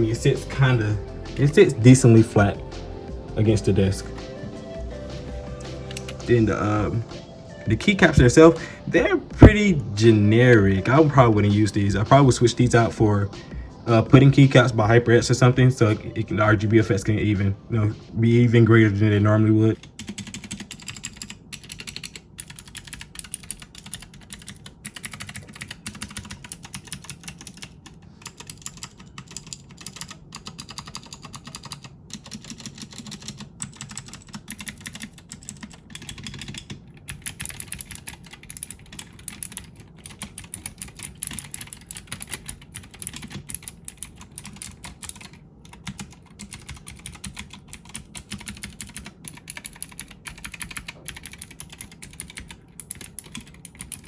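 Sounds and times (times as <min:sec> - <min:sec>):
mechanical keyboard typing: 0:05.2 - 0:06.9, 0:19.7 - 0:54.0.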